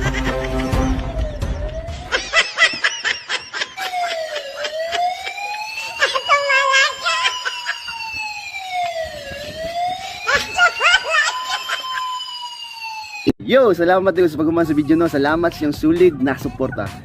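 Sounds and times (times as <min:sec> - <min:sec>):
police siren wailing: 0:00.0 - 0:13.4
voices and laughter: 0:02.1 - 0:08.2, 0:10.2 - 0:12.2.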